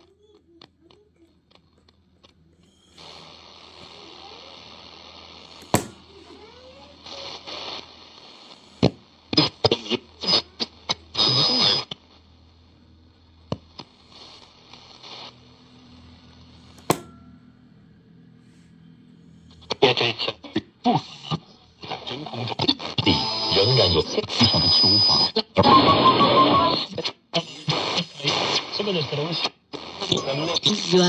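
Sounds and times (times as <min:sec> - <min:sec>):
radio static hiss: 0:02.5 - 0:17.1, 0:19.6 - 0:31.0
faint whistle: 0:02.6 - 0:03.0.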